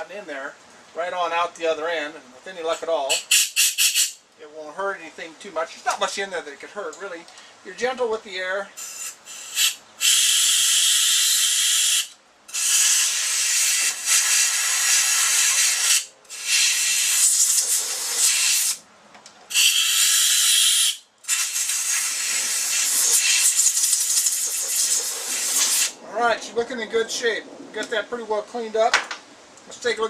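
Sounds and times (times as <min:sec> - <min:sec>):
compressed air blow gun hissing: 0:03.1 - 0:04.2, 0:08.8 - 0:18.8, 0:19.5 - 0:26.0.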